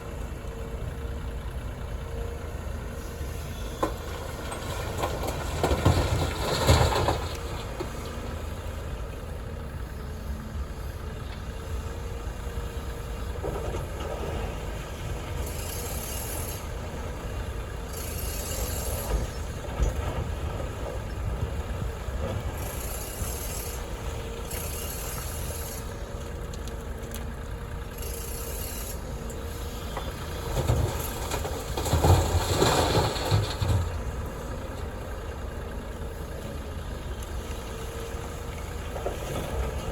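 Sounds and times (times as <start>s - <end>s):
heavy diesel machinery running: 0.0s - 39.9s.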